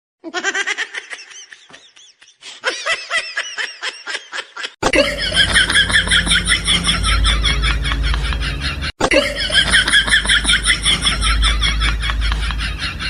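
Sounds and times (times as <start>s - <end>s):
person laughing: 0.2s - 13.0s
low rumble: 5.0s - 13.0s.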